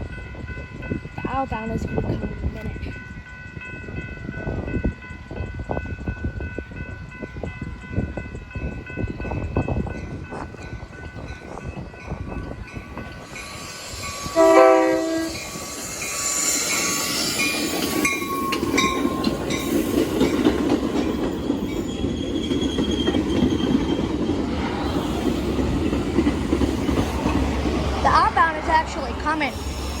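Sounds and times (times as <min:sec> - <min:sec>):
high wheel squeal: 0:13.2 - 0:20.0, 0:21.5 - 0:26.1, 0:29.2 - 0:30.0
train horn blast: 0:14.1 - 0:15.5
train wheels clicking over rail joints: 0:15.3 - 0:30.0.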